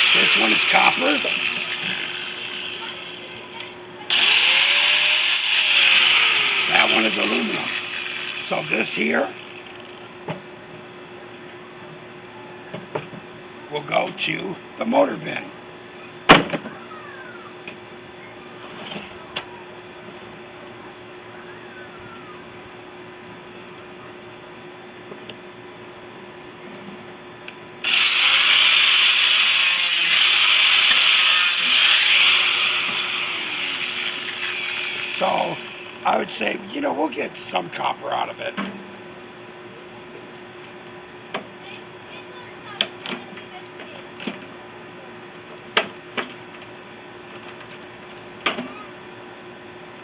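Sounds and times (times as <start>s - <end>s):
power tool whining: 0.0s - 10.1s, 27.8s - 36.5s.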